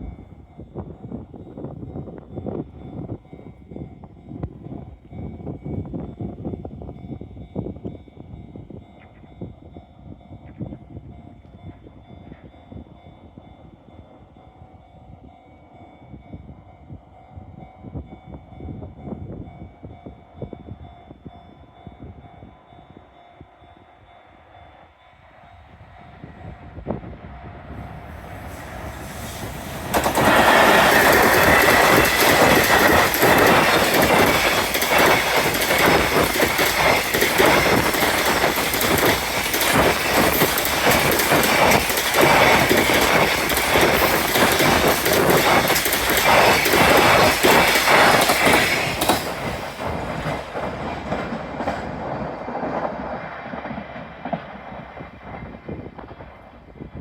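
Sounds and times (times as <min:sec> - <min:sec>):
electric locomotive passing: 0:00.0 - 0:57.0
wheels clattering over rail joints: 0:28.6 - 0:54.7.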